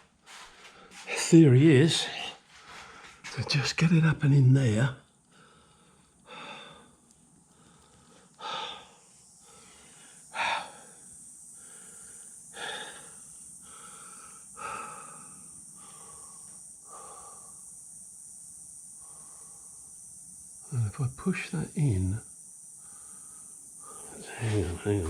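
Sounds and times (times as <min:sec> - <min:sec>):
man breathing hard: 0:05.3 - 0:17.7, 0:22.8 - 0:24.8.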